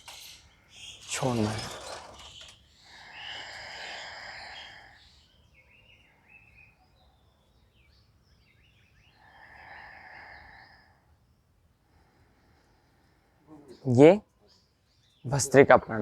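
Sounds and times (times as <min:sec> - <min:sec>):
deep breath through the nose: 0:02.8 - 0:05.3, 0:09.1 - 0:13.5.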